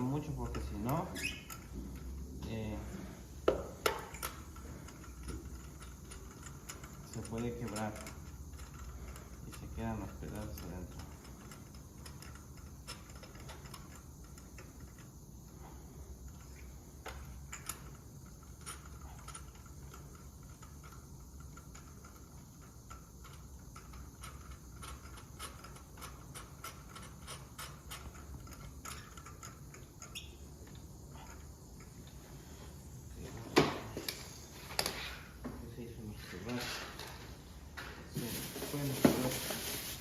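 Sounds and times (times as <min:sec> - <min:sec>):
hand tools clicking and tapping: 0:03.4 - 0:15.1.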